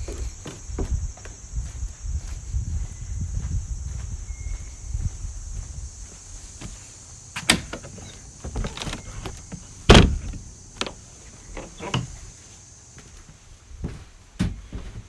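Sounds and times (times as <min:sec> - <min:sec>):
steady high hiss: 0:00.0 - 0:14.6
knocks and thumps: 0:07.4 - 0:11.0.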